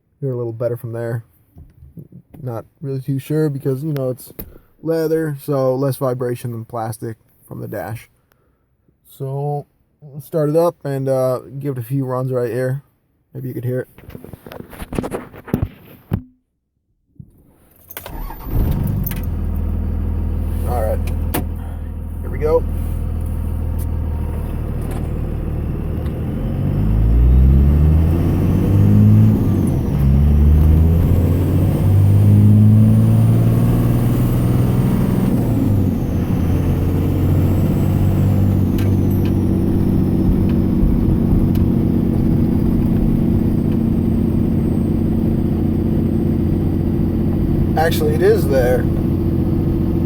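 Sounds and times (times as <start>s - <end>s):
diesel engine accelerating: 18.1s - 50.0s.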